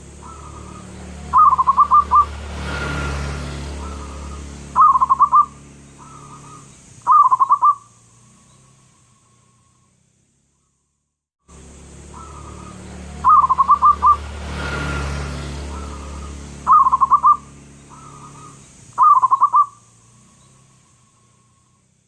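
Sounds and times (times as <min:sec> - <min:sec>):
dove cooing: 0:00.1 - 0:02.4, 0:03.8 - 0:07.9, 0:12.1 - 0:14.2, 0:15.6 - 0:19.8.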